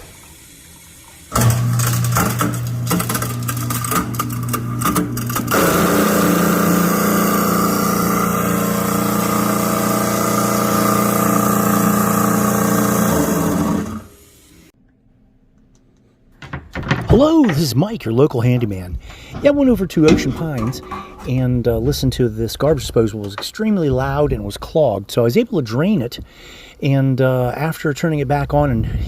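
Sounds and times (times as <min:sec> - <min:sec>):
garbage disposal grinding: 0:00.0 - 0:14.7, 0:16.4 - 0:23.4.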